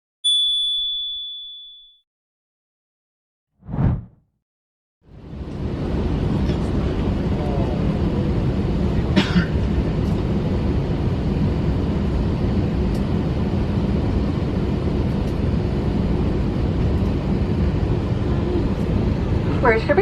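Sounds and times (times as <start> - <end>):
aircraft cabin rumble and hiss: 5.1 - 20.0.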